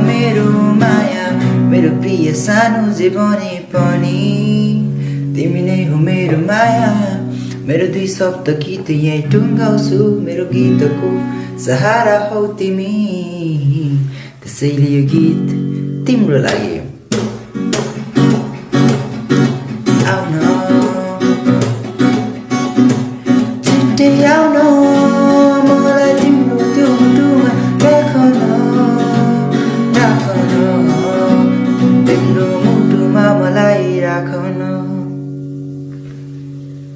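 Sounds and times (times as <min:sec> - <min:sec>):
acoustic guitar strumming: 0:00.0 - 0:36.9.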